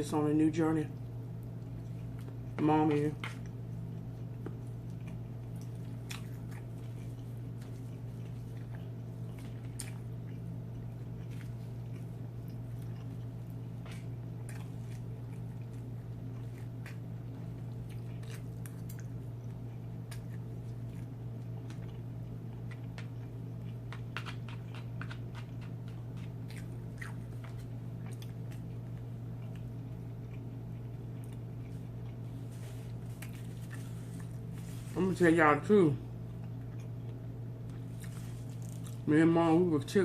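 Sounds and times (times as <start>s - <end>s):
steady low hum: 0.0s - 40.0s
chewing and biting food: 0.9s - 35.1s, 36.1s - 39.1s
small crunches: 36.4s - 39.1s.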